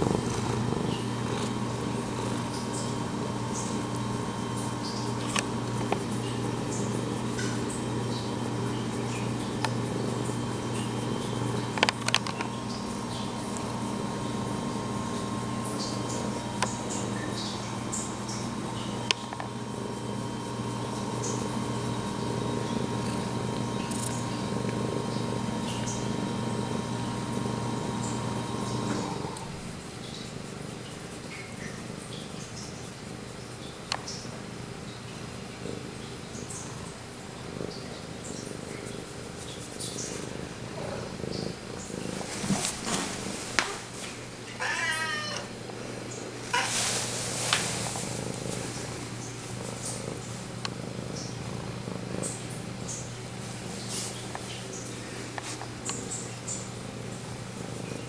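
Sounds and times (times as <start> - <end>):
cat purring: 0.0 - 32.8, 34.1 - 58.0
cat meowing: 44.5 - 45.6, 46.5 - 47.0.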